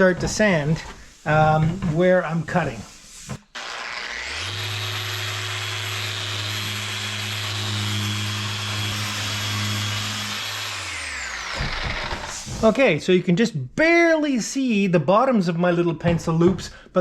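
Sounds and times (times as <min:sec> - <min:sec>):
power sander sanding wood: 0:00.0 - 0:12.8.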